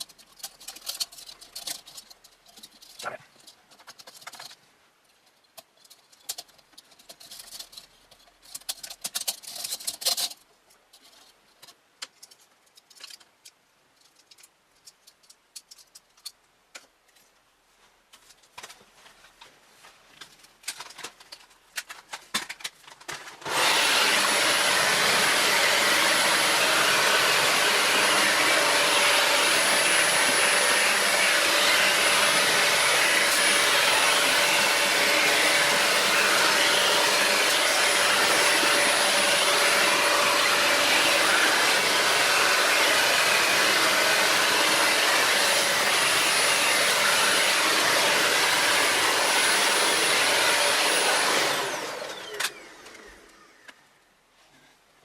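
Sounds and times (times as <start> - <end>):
computer parts clicking and rubbing: 0.0 - 23.5
blower motor rushing: 23.4 - 53.6.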